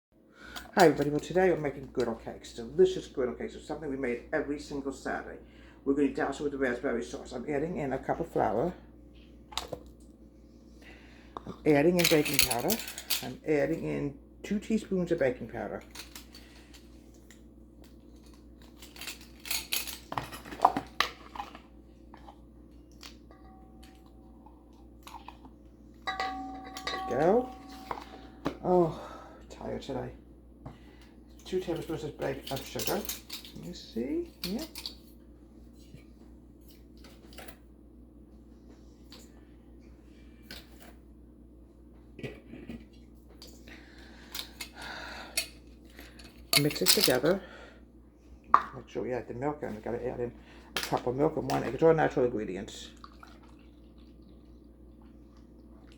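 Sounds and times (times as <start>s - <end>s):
low steady hum: 0.2s - 55.9s
kitchen utensils clicking and knocking: 26.1s - 28.6s, 46.6s - 47.3s
metal spoon clinking on bowl: 26.1s - 28.6s.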